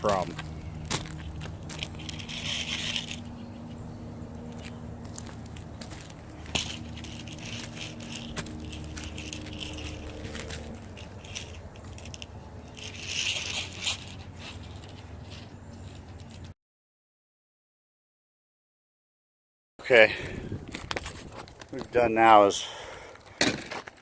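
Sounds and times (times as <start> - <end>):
crunching and scraping demolition: 0.0 - 16.5, 23.1 - 24.0.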